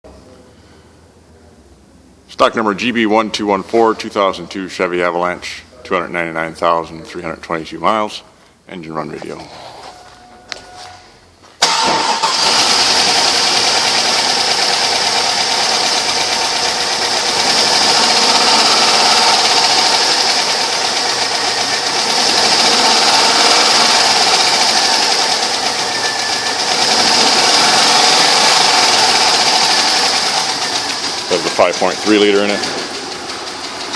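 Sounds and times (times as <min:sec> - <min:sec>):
car engine starting and running: 0:11.6 - 0:33.9.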